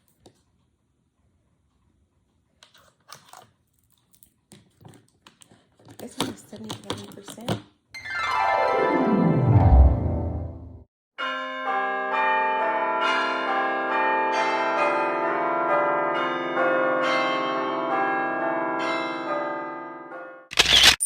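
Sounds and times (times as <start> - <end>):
bell-like chiming melody: 8.0 - 10.2.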